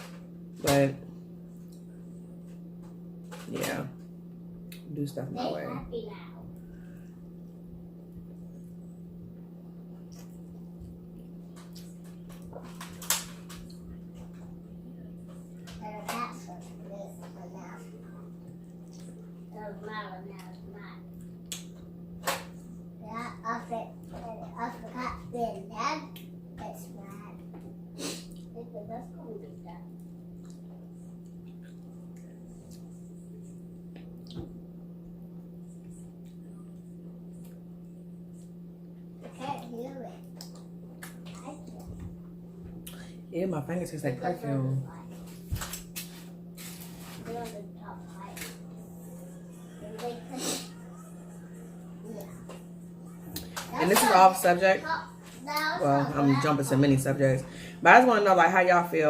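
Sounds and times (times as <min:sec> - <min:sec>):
steady low hum: 0:00.0 - 0:59.0
soft wet chewing: 0:01.5 - 0:03.1, 0:09.8 - 0:12.8, 0:17.9 - 0:19.5, 0:20.4 - 0:22.0, 0:29.8 - 0:34.6, 0:35.2 - 0:38.7, 0:39.6 - 0:43.2.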